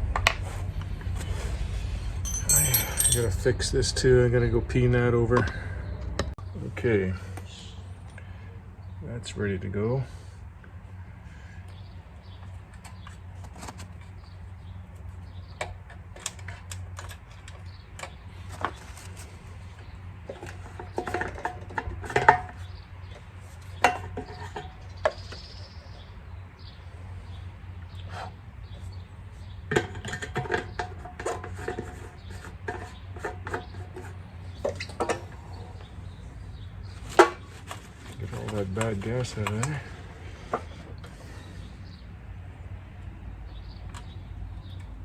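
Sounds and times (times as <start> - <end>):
metal parts clinking on workbench: 2.3 - 3.4.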